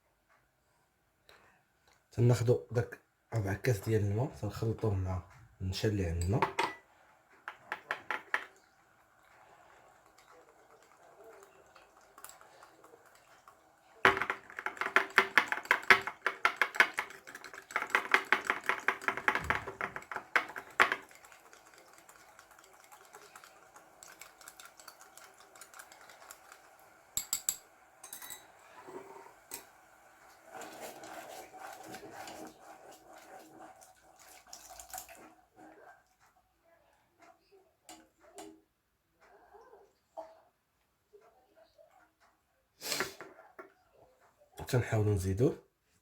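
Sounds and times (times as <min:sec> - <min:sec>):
soft stirring: 0:03.6 - 0:40.5
utensil clinking in glass bowl: 0:27.2 - 0:28.5.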